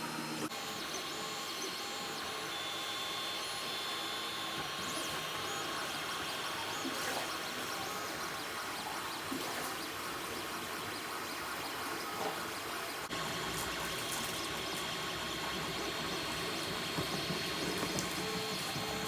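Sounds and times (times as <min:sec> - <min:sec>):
printer motors humming: 0:00.0 - 0:19.0
steady high whine: 0:00.0 - 0:19.0.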